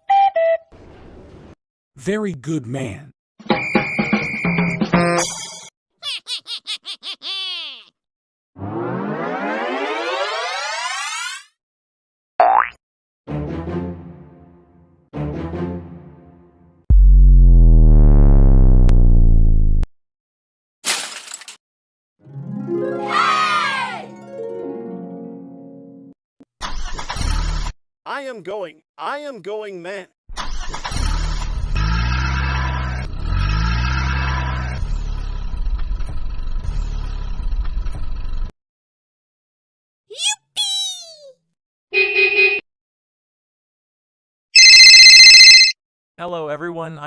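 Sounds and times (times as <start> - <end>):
music: 3.5 - 5.1, 13.3 - 17.8, 22.2 - 26.2
buzzy synthesizer tone: 16.9 - 19.9
engine revving: 16.9 - 19.9, 30.9 - 37.2.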